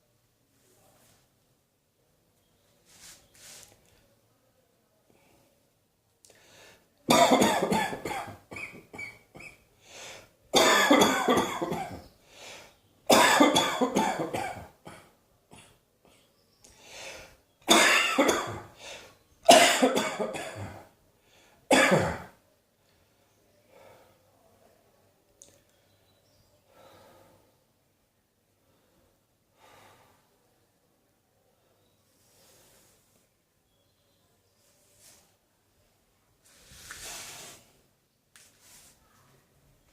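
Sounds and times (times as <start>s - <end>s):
person coughing: 7.1s - 9.6s, 10.6s - 12.0s, 13.1s - 15.8s, 17.7s - 18.7s, 19.5s - 20.9s, 21.7s - 22.4s.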